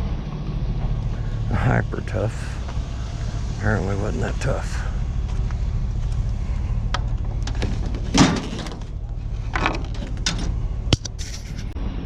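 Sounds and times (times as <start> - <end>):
vehicle engine rumbling: 0.0 - 12.0
knocks and clatters: 5.3 - 11.8
loud thump: 7.0 - 8.9.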